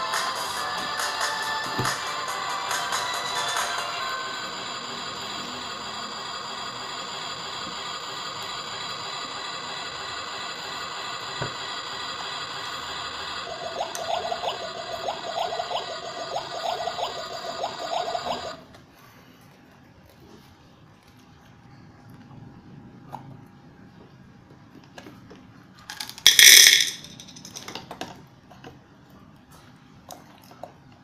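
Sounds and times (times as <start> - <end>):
rapid pulsing tone: 13.5 - 18.6.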